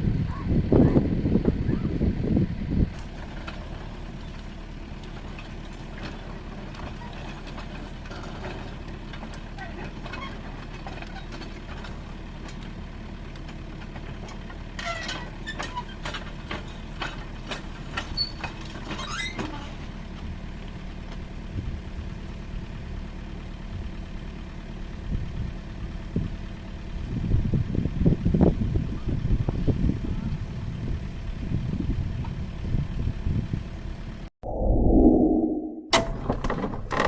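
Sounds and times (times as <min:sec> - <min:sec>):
heavy low rumble: 0:34.4 - 0:36.0.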